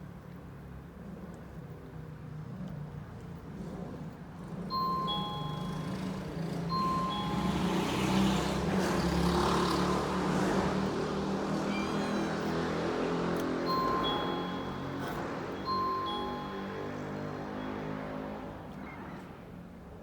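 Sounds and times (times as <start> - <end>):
two-note chime: 4.7 - 9.8, 13.4 - 18.7.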